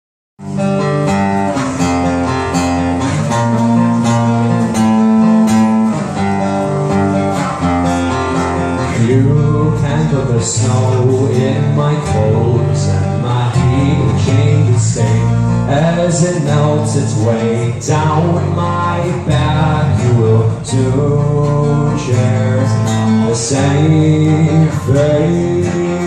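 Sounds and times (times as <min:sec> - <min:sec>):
acoustic guitar chords: 0:00.4 - 0:26.0.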